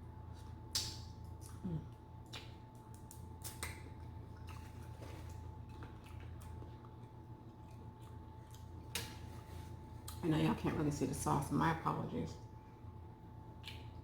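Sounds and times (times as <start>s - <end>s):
faint steady hum: 0.0s - 14.0s
wet mouth chewing smacks: 2.2s - 10.2s.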